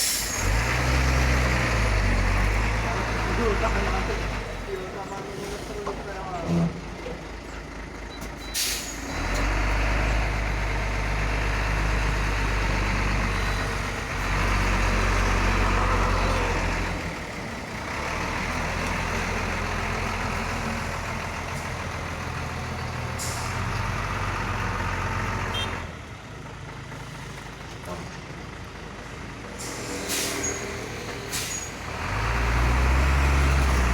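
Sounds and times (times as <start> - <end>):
short air hisses: 0.0 - 0.4, 8.6 - 9.1, 29.6 - 31.8
truck diesel engine under load: 0.0 - 33.9.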